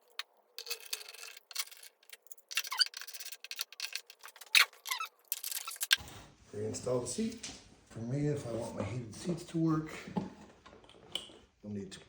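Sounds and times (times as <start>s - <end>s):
metal part scraping: 0.0s - 6.0s
short squeaks: 0.0s - 6.0s.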